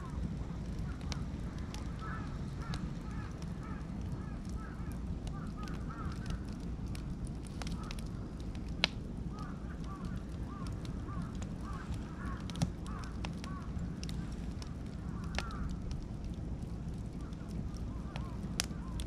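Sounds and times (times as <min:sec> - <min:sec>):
sharp pops from fire: 0:00.0 - 0:19.0
wood fire crackling: 0:00.0 - 0:19.0.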